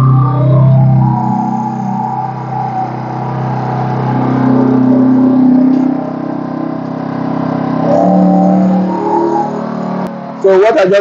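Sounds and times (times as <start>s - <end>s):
generator engine running: 0.0s - 11.0s.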